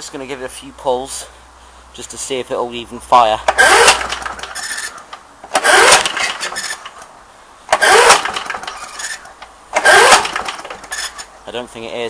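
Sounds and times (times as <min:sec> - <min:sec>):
lawnmower engine cranking: 0:03.5 - 0:07.1, 0:07.7 - 0:11.3.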